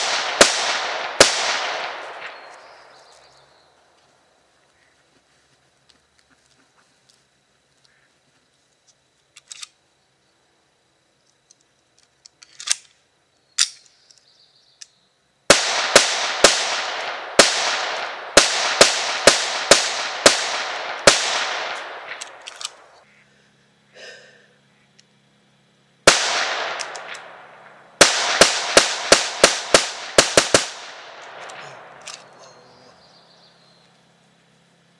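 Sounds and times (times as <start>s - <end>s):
pistol shots: 0.0s - 3.0s, 15.5s - 23.0s, 26.1s - 32.3s
faint gun clicks: 9.3s - 9.8s, 11.3s - 13.0s, 13.6s - 15.0s, 21.7s - 22.9s, 26.7s - 27.3s, 31.2s - 32.3s.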